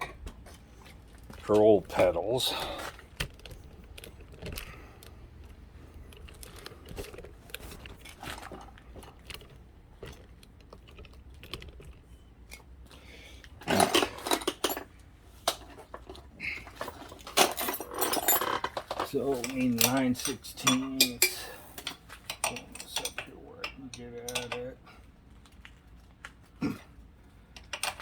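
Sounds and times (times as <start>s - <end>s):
tools clattering: 13.6s - 24.7s
metal tools clinking: 13.6s - 24.8s.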